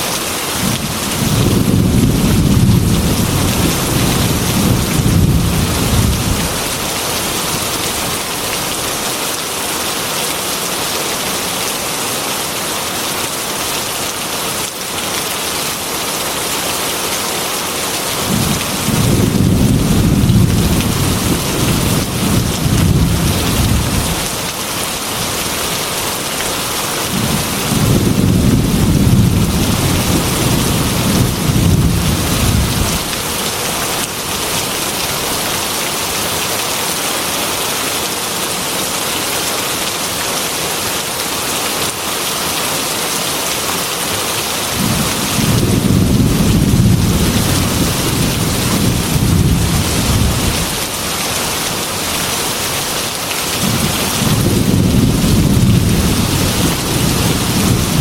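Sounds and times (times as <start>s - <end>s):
heavy rain on metal roof: 0.0s - 58.0s
rolling thunder: 0.6s - 6.8s, 18.3s - 24.3s, 27.1s - 33.2s, 44.8s - 50.7s, 53.6s - 58.0s.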